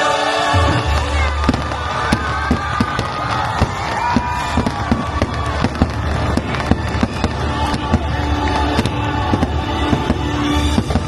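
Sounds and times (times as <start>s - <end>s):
fireworks bangs and crackles: 0.5s - 11.0s.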